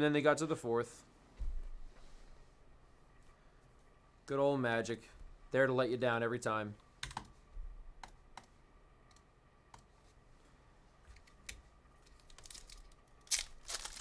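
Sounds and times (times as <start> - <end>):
wrapper crinkling and tearing: 12.0 - 14.0.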